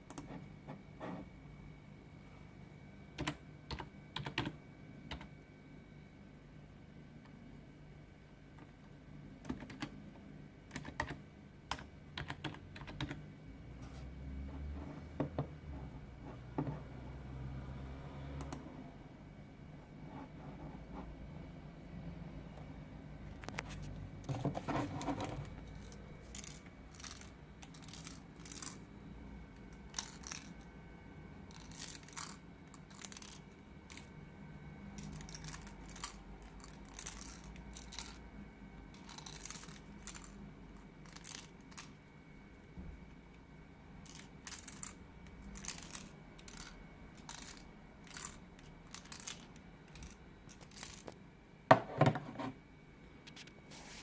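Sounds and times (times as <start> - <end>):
handling noises: 23.4 - 28.8.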